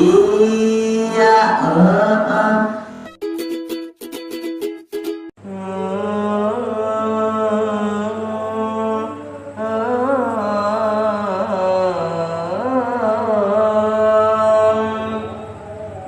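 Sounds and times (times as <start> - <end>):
plucked string notes: 2.9 - 5.3
person chanting in long notes: 5.4 - 16.0.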